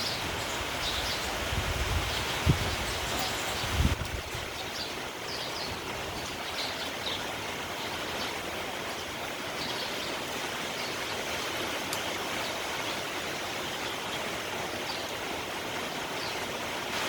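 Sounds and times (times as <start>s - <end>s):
sparrows chirping: 0.0s - 8.5s, 9.5s - 11.2s
rain hissing: 0.0s - 17.0s.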